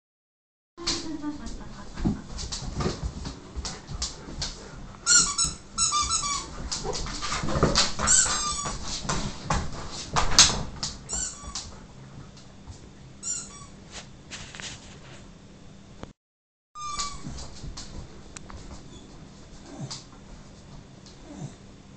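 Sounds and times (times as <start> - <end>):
dogs scuffling: 1.5 - 15.3, 16.8 - 21.0
rubber squeaky toy squeaking: 5.0 - 6.5, 8.1 - 8.7, 11.1 - 11.6, 13.2 - 13.8, 16.8 - 17.3
dogs whimpering: 19.6 - 20.1, 21.2 - 21.6.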